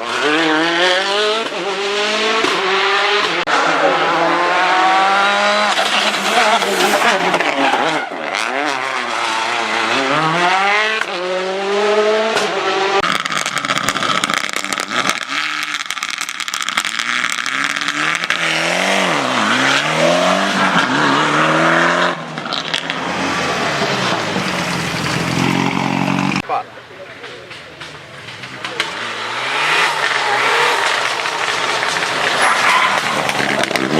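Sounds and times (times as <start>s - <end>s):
rally car engines at full throttle: 0.0s - 33.9s
tyre and road noise: 0.0s - 33.9s.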